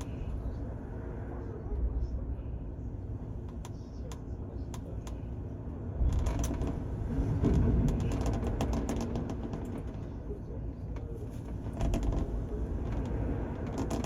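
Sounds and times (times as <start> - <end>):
ship low rumble: 0.0 - 14.0
creaks: 6.0 - 10.2, 10.9 - 14.0.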